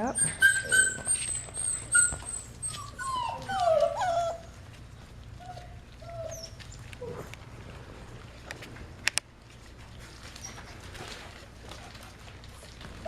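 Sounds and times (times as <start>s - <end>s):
puppies whining and squeaking: 0.0s - 7.4s, 10.1s - 11.1s.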